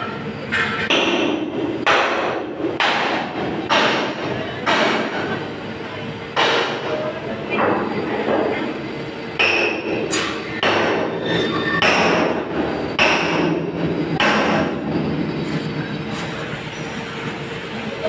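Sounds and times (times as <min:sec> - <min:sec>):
steady low hum: 0:00.0 - 0:18.0
hammer striking steel: 0:00.5 - 0:05.3, 0:06.4 - 0:07.0, 0:09.4 - 0:14.8.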